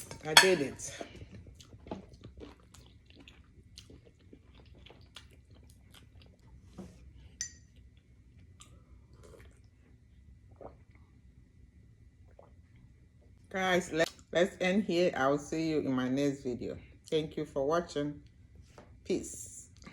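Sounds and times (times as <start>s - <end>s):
person chewing food: 1.0s - 11.2s.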